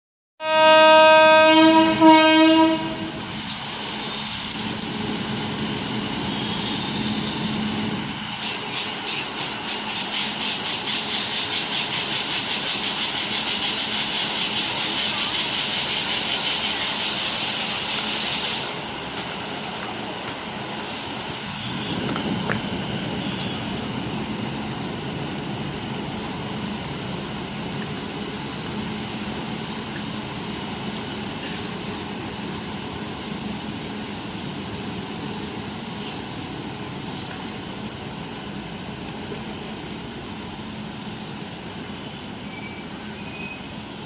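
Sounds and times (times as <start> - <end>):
locomotive horn blast: 0.4 - 3.2
locomotive hum: 0.4 - 44.0.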